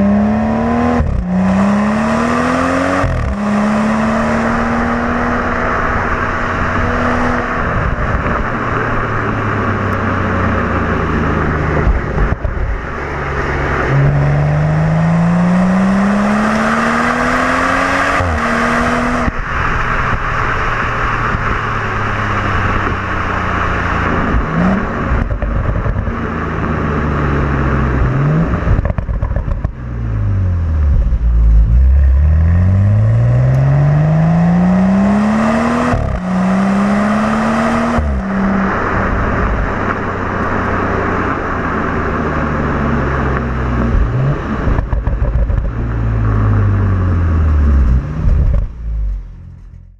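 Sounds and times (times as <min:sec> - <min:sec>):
car engine accelerating: 0:00.0 - 0:49.9.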